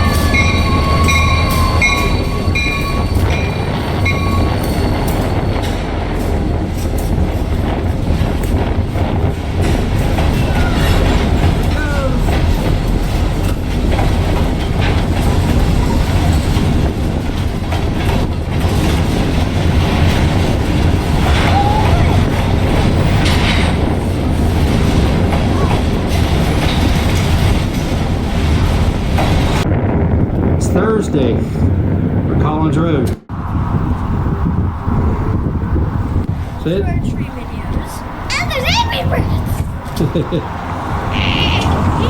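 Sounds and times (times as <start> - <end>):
wheels clicking over rail joints: 0.0 - 29.7
train rumbling past: 0.0 - 42.0.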